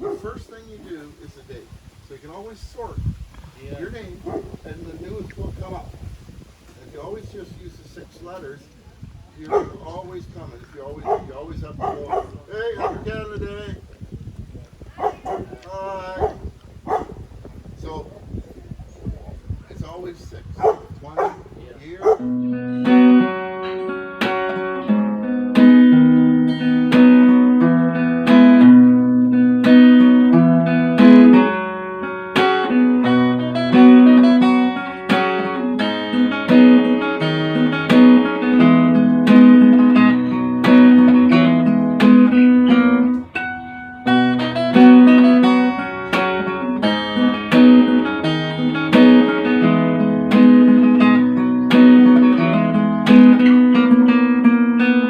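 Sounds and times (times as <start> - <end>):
acoustic guitar music: 22.0 - 55.0.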